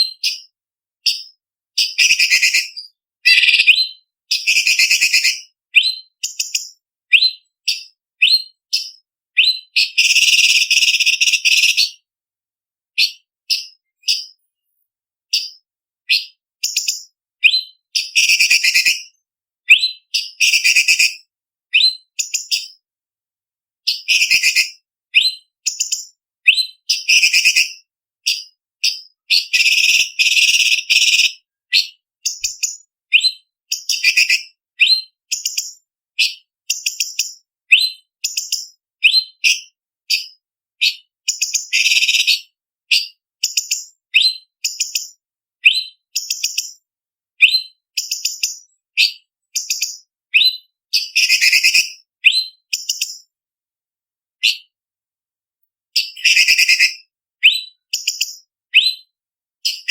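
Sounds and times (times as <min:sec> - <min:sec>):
bird chattering trills: 0:02.0 - 0:03.8
bird whistling phrases: 0:02.0 - 0:06.0, 0:07.1 - 0:07.4.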